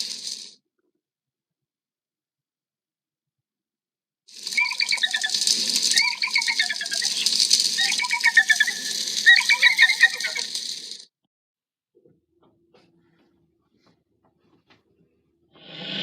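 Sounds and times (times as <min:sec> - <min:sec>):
rattling hiss: 0:00.0 - 0:00.5, 0:04.3 - 0:11.0
high chirping trills: 0:04.4 - 0:11.0.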